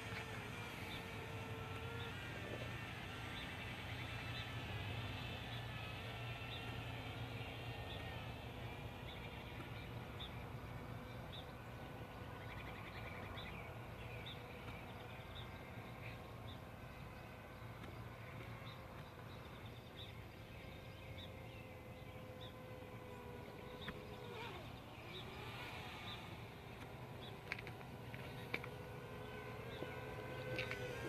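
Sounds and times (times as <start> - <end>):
faint steady tones: 0.0 - 31.0
steady low hum: 0.0 - 31.0
bird chirping: 6.4 - 31.0.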